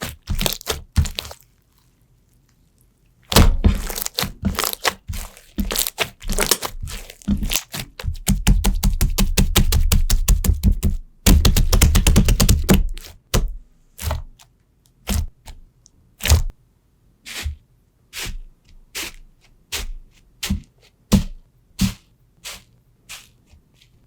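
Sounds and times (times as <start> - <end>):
slime squishing with crackling pops: 0.0 - 1.9, 3.3 - 16.5.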